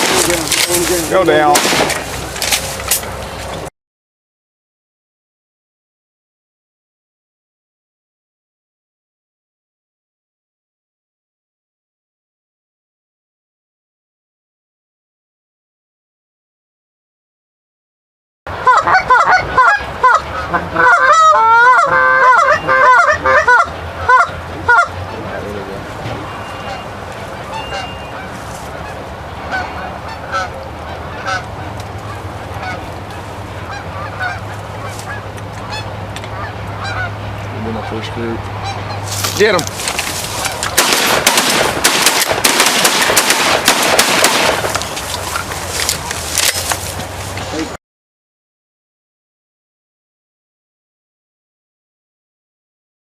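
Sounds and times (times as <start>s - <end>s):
shotguns firing volley: 0.0s - 3.0s, 39.4s - 45.5s
geese honking: 18.5s - 47.7s.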